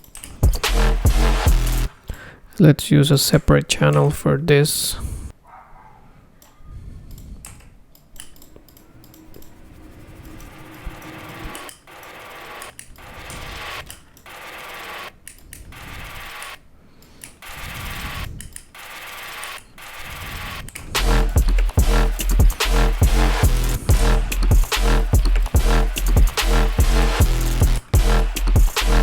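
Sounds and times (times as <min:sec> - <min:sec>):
electronic fill samples: 0:00.4 - 0:02.0, 0:08.6 - 0:15.1, 0:21.0 - 0:29.0.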